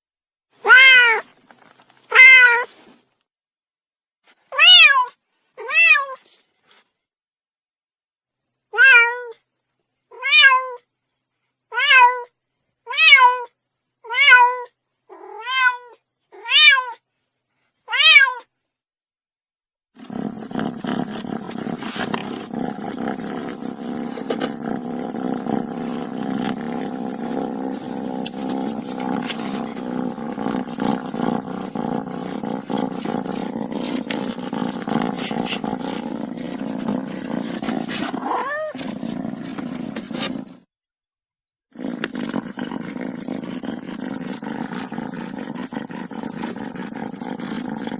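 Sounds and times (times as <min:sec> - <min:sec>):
kitten meowing: 0:00.6 - 0:01.2, 0:04.6 - 0:06.2, 0:08.8 - 0:09.4, 0:38.2 - 0:38.8.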